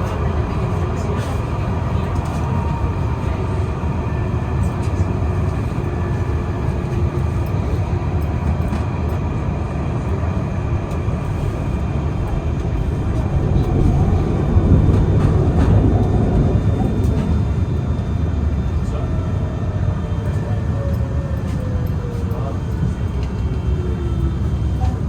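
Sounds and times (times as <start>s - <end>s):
tram wheels rumbling on rail: 0.0s - 25.0s.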